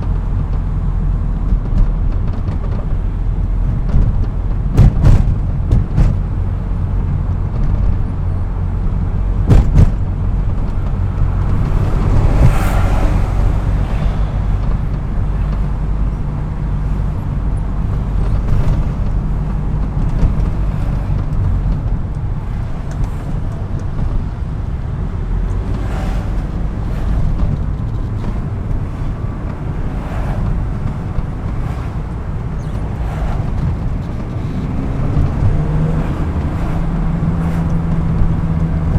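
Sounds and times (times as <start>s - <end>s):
car engine drone inside cabin: 0.0s - 38.9s
sharp knocks: 3.8s - 6.4s, 9.4s - 15.7s.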